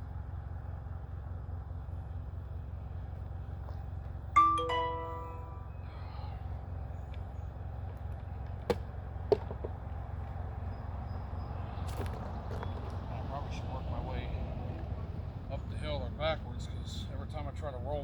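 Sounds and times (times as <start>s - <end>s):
metallic clang ringing: 4.4s - 5.8s.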